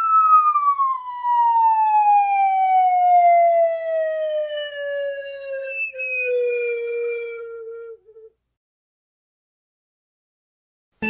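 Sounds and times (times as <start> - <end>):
siren-like falling tone: 0.0 - 8.3.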